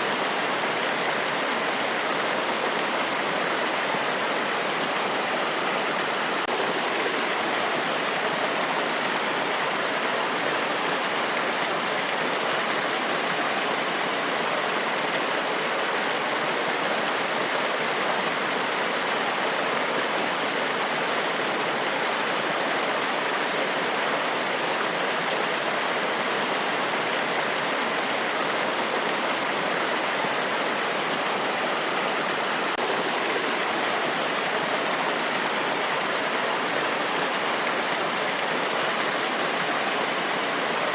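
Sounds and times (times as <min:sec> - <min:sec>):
water cascading over rocks: 0:00.0 - 0:40.9.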